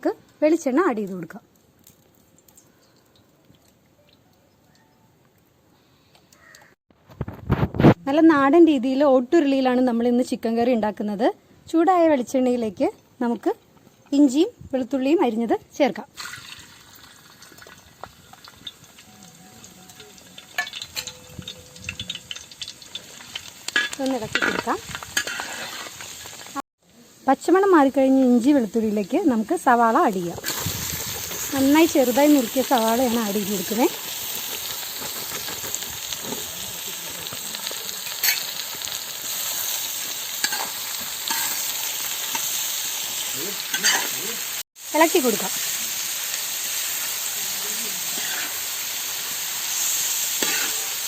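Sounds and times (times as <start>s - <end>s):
food sizzling in hot oil: 12.2s - 51.0s.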